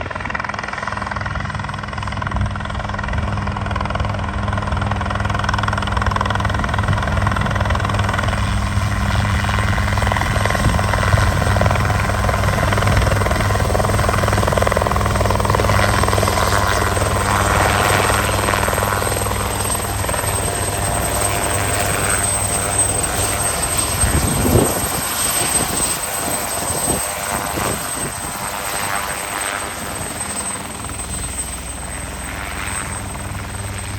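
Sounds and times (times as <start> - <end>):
helicopter rotor and engine hum: 0.0 - 33.9.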